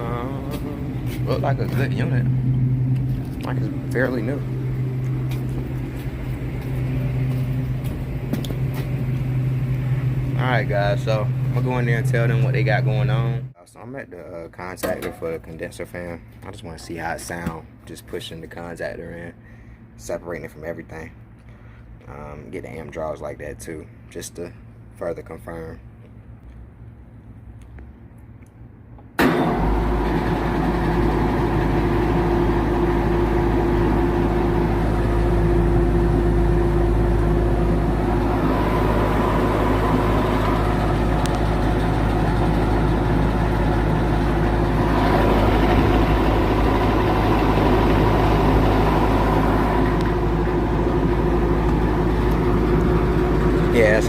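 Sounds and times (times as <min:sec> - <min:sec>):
fan motor humming: 0:00.0 - 0:13.5, 0:29.2 - 0:54.0.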